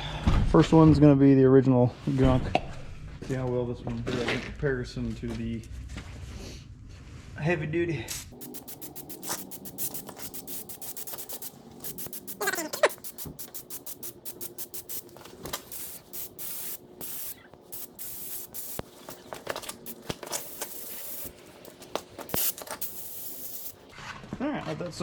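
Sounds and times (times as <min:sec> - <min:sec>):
aerosol can spraying: 0:08.4 - 0:23.9.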